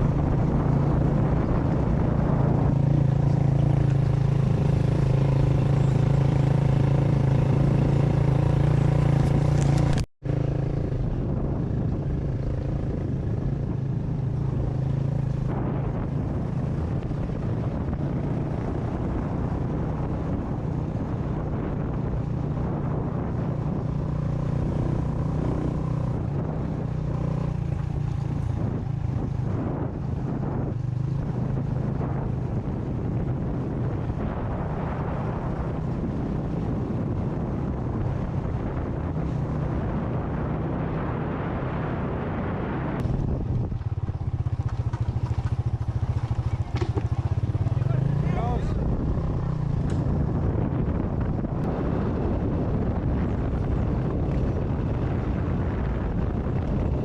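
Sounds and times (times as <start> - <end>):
motorcycle engine droning: 0.0 - 57.0
road and wind noise: 0.0 - 57.0.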